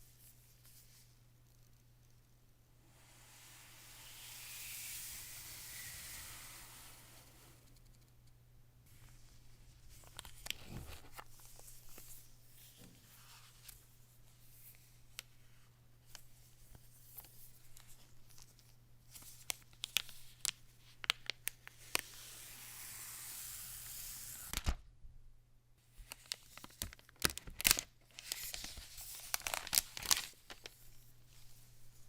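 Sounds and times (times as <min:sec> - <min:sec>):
packaging tearing and crinkling: 0:26.2 - 0:30.8.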